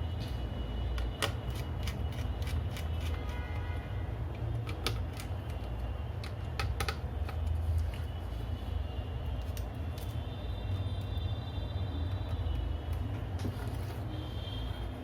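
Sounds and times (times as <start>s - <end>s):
clicks of laptop parts handled: 6.2s - 7.5s.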